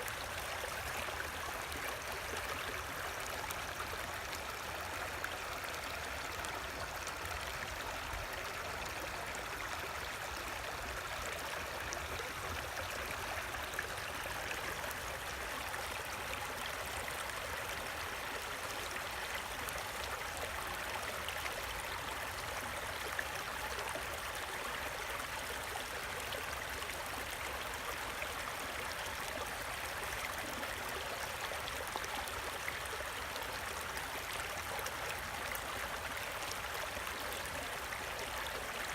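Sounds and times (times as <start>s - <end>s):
creek water running: 0.0s - 38.9s.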